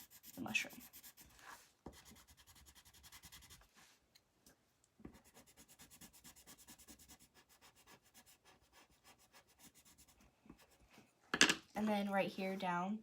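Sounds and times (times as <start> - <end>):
pencil scribbling on paper: 0.0 - 3.7, 5.1 - 11.0.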